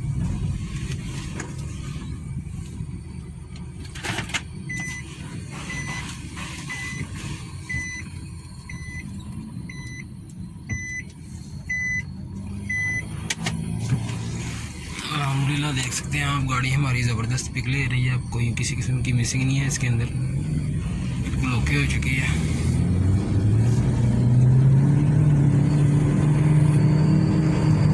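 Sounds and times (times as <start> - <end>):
car engine and road noise: 0.0 - 27.9
short electronic beep: 5.6 - 6.1.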